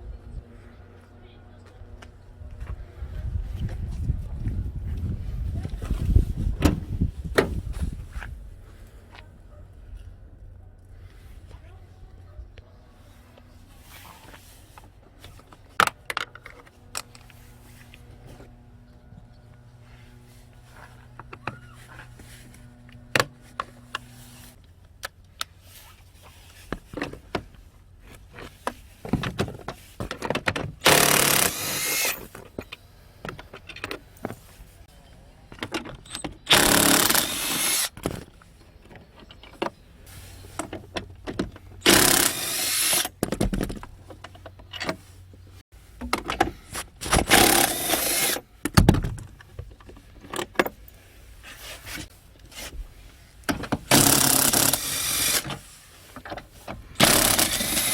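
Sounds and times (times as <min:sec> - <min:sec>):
clicks and knocks of metal parts: 0:28.3 - 0:34.5, 0:35.5 - 0:39.8
power drill bursts: 0:30.8 - 0:32.3, 0:36.5 - 0:38.0, 0:41.8 - 0:43.2, 0:47.2 - 0:48.5, 0:53.9 - 0:55.6, 0:57.0 - 0:57.9.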